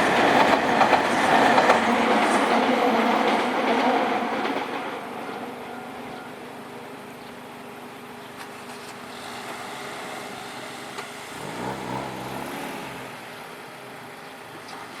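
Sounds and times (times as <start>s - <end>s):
outdoor background noise: 0.0s - 15.0s
motor vehicle passing: 11.3s - 13.3s.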